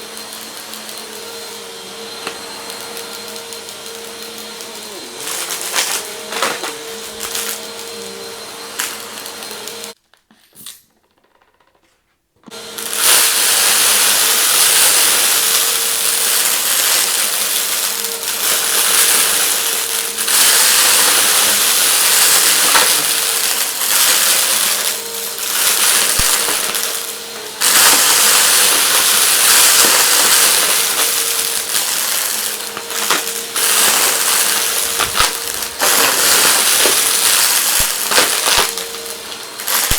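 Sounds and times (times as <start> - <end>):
vacuum cleaner running: 0.0 - 10.0, 12.5 - 39.9
debris crackling and rattling: 13.6 - 39.9.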